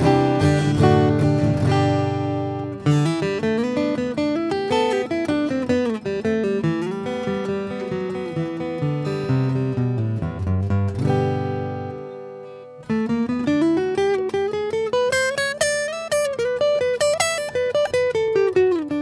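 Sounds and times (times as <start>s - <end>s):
acoustic guitar chord ringing: 0.0s - 18.8s.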